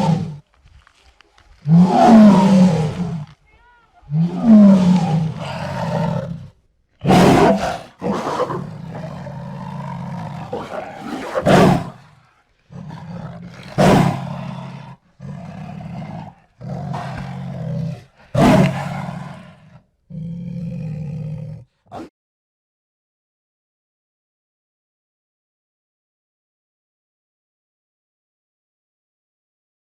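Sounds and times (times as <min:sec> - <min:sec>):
jaguar roaring and growling: 0:00.0 - 0:00.4, 0:01.5 - 0:03.4, 0:04.0 - 0:22.1.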